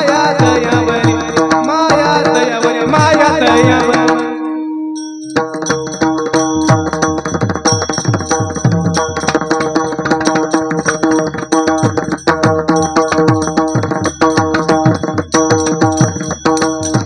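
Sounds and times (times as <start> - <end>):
harmonium chords: 0.0 - 7.5
hand drum playing: 0.0 - 17.0
small hand cymbals ringing: 4.4 - 17.0.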